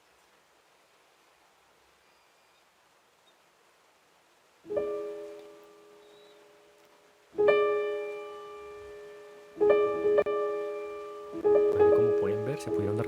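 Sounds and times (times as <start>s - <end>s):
piano chords: 4.7s - 13.0s.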